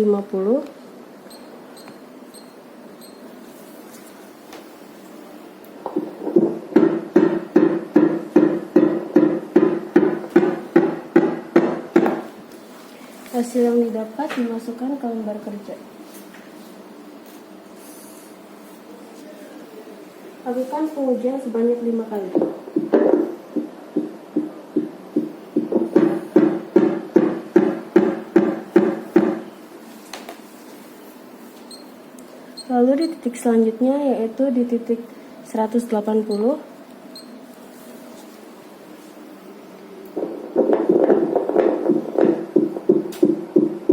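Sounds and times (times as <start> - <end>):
pulsing doppler heartbeat: 6.2 - 12.1, 22.4 - 29.4, 40.2 - 43.9.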